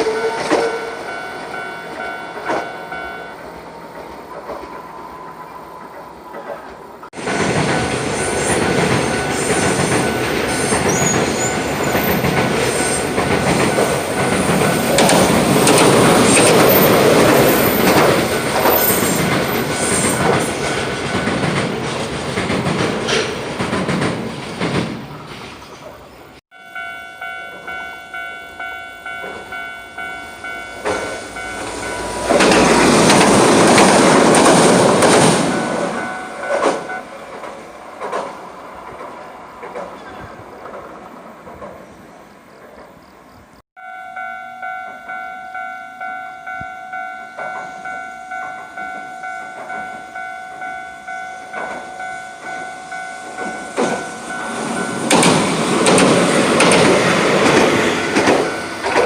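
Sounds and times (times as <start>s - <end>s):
level crossing warning bell: 0.0s - 3.6s, 7.2s - 21.7s, 26.5s - 37.2s, 43.8s - 59.0s
train wheels clattering over rails: 5.8s - 26.0s, 30.7s - 43.0s, 51.5s - 59.0s.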